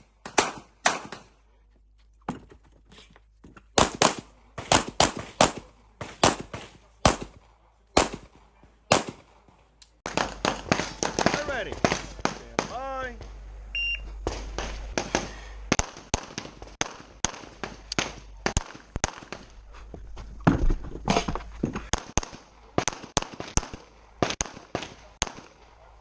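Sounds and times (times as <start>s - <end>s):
rapid handgun shots: 0.2s - 1.3s, 3.8s - 7.4s, 8.0s - 9.4s, 10.0s - 13.4s, 14.2s - 19.5s, 21.9s - 25.8s.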